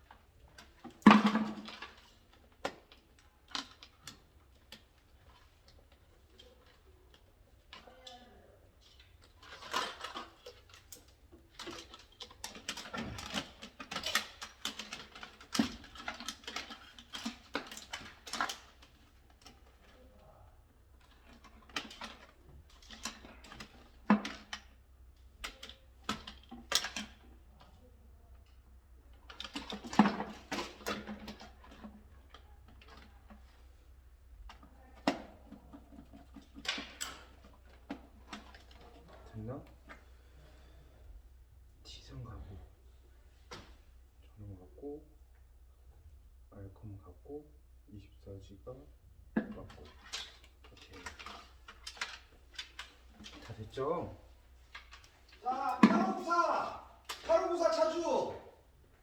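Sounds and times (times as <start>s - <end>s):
clicks and rustling of wiring work: 0.0s - 46.8s, 48.3s - 59.0s.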